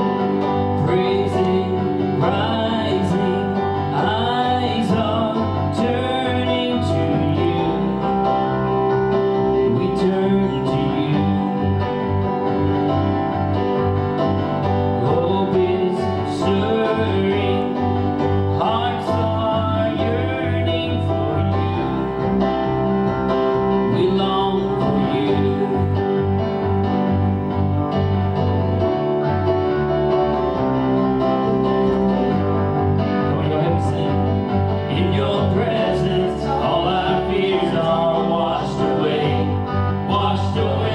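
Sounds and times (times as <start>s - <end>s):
person singing: 0.0s - 12.3s, 14.8s - 27.0s, 33.2s - 40.9s
bass line: 0.0s - 40.9s
guitar: 0.0s - 40.9s.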